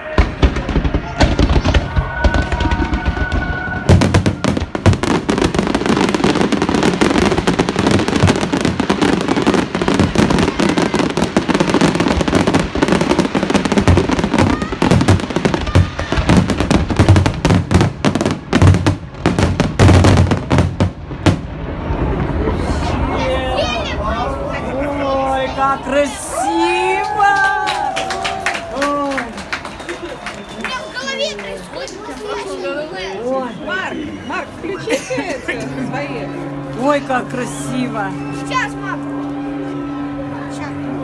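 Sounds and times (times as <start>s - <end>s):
fireworks bangs and crackles: 0.0s - 35.1s
heavy low firework booms: 0.1s - 25.0s.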